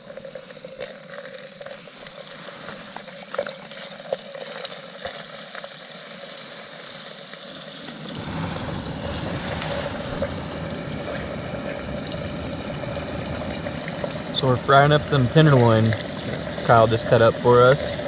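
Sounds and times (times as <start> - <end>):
meat frying in fat: 0.0 - 18.0
gas stove burner hissing: 8.0 - 18.0.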